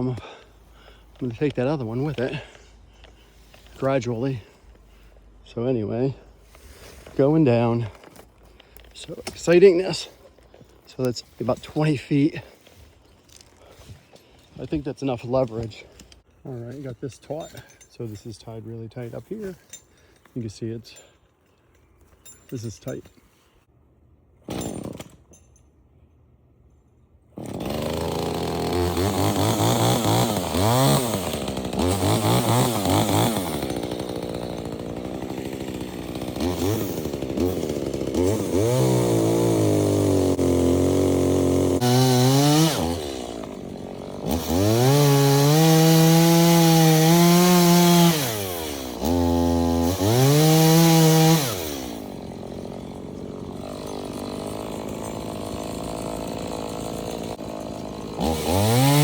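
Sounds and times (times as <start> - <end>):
chainsaw engine revving: 0.0 - 5.1, 27.4 - 59.0.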